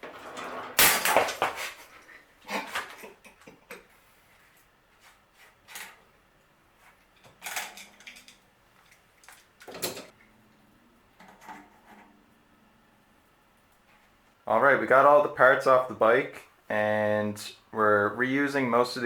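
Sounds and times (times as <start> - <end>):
tools clunking and clattering: 7.1 - 10.2.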